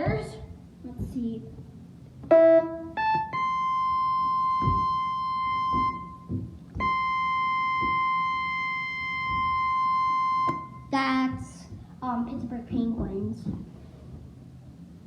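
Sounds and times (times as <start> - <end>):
electronic keyboard sustained note: 2.3 - 10.9
faint low knocks: 3.1 - 14.4.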